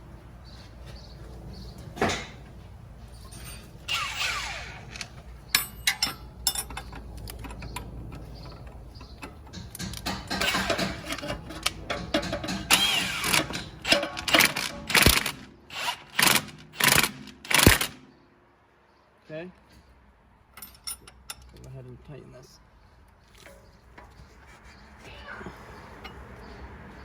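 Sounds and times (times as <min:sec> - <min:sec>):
impact wrench bursts: 0:03.9 - 0:18.0.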